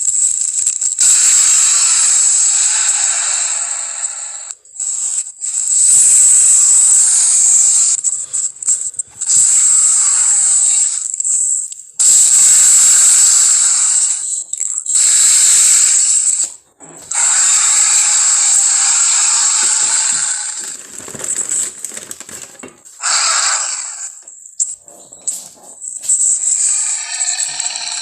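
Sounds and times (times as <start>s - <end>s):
loud long monster hisses: 1.0s - 8.4s, 9.2s - 11.0s, 12.0s - 20.8s, 23.0s - 24.2s, 26.4s - 28.0s.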